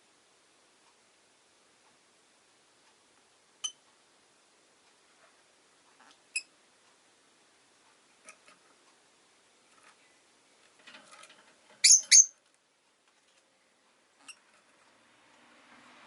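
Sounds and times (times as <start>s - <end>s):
bird chirps: 11.8s - 12.3s.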